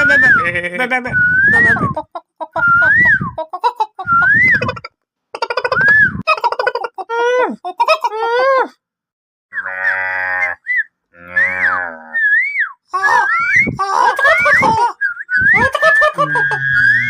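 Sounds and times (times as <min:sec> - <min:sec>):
cow-like moo: 0:09.6 - 0:10.6, 0:11.2 - 0:12.2
whistled birdlike glides: 0:10.5 - 0:17.0
chirps and warbles: 0:13.0 - 0:17.0.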